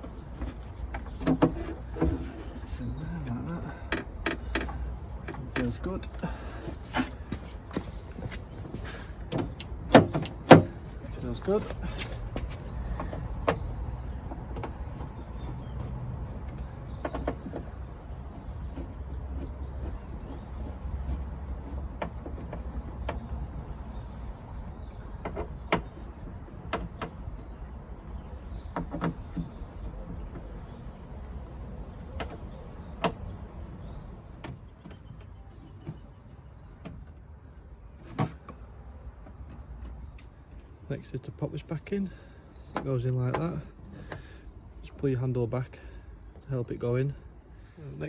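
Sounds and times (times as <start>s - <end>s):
clicks and knocks on car door: 6.6s - 24.1s, 28.6s - 30.6s, 32.0s - 36.1s.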